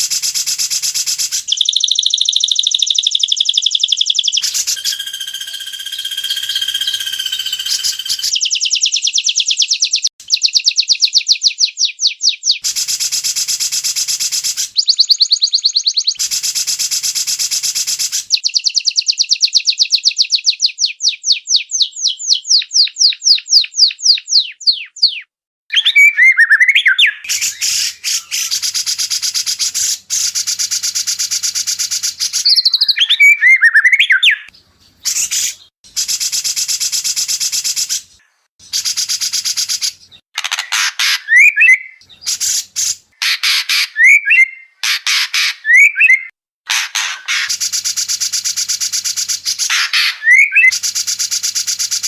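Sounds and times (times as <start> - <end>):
rapid sweeping bird notes: 0.0 - 10.4
whistled bird phrases: 1.0 - 12.6, 14.6 - 16.2, 18.3 - 30.4, 32.2 - 35.7, 41.0 - 46.4, 49.4 - 50.8.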